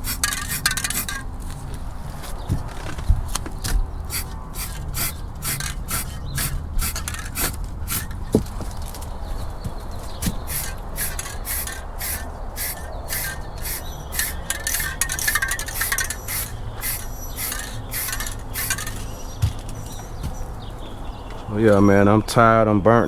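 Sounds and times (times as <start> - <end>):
rhythmic scraping strokes: 0.0 - 1.5, 4.1 - 8.4, 10.1 - 20.4.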